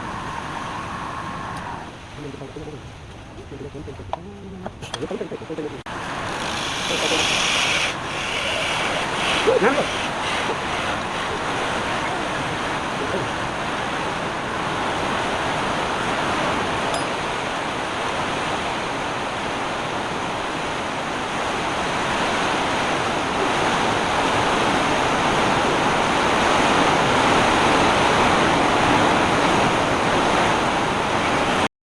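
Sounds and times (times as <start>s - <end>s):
sandpaper on spinning wood: 6.2s - 12.4s.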